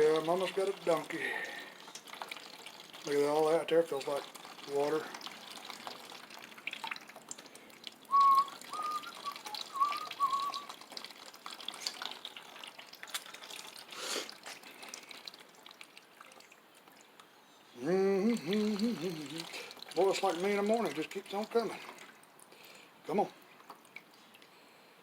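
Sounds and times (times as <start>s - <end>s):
liquid trickling into a pan: 0.0s - 24.7s
whistled notes: 8.1s - 10.7s.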